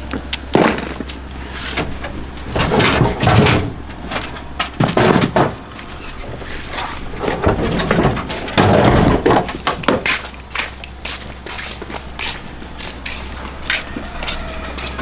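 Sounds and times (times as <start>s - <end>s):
thumping and rattling: 0.1s - 15.0s
objects knocking and clattering: 0.2s - 12.0s.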